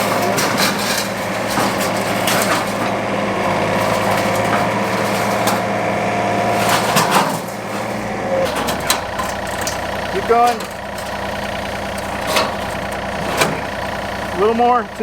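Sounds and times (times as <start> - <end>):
sharp knocks and cracks: 0.0 - 14.0
excavator diesel engine running: 0.0 - 15.0.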